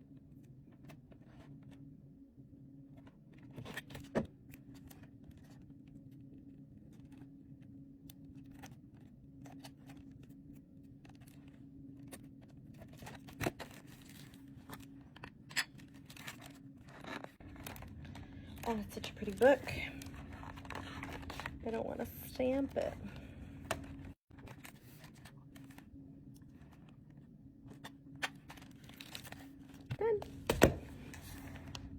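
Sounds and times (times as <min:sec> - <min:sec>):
low hum: 0:17.3 - 0:24.2.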